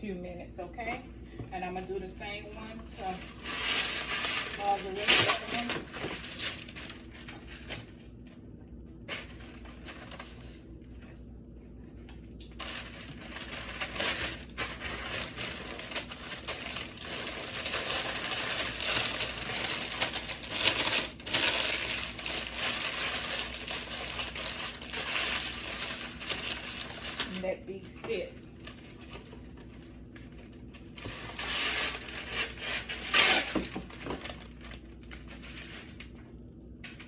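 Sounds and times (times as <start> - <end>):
parchment paper crinkling: 2.4 - 8.4, 9.1 - 37.0.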